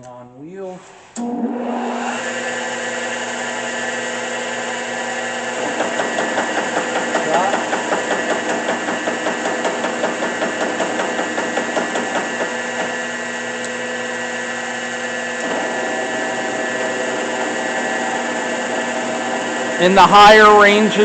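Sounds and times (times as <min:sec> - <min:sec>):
machine hum with high whine: 0:00.0 - 0:21.0
grinder drive knocking: 0:05.6 - 0:13.1.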